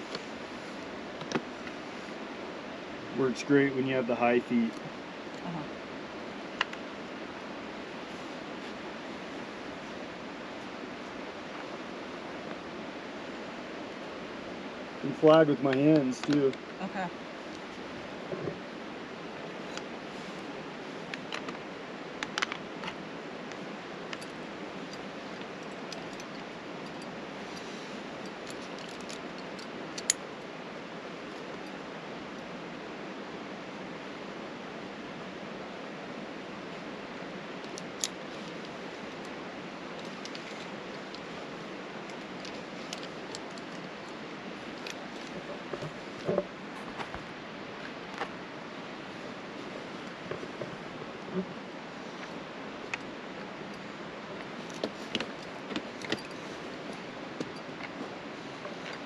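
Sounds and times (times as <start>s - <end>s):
steady background hiss: 0.0s - 59.0s
metal picks clicking on rock: 28.3s - 30.2s.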